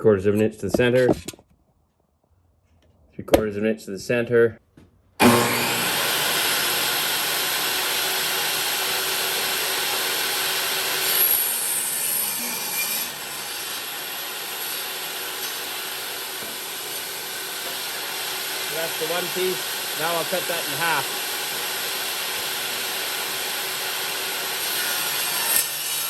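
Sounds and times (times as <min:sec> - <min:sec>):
power saw ripping wood: 0:05.2 - 0:26.0.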